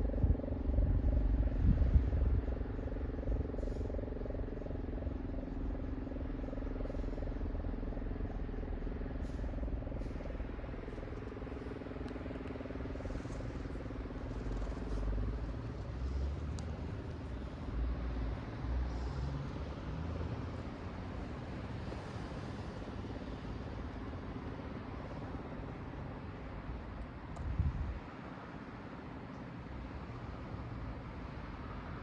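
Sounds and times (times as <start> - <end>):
low rumble: 0.0 - 17.0.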